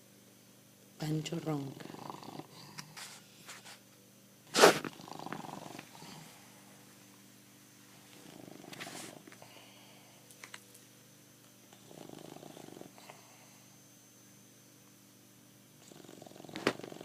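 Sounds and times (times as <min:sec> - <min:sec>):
dog snoring: 0:01.5 - 0:03.3, 0:04.5 - 0:06.4, 0:08.1 - 0:09.3, 0:11.7 - 0:13.6, 0:15.8 - 0:17.0.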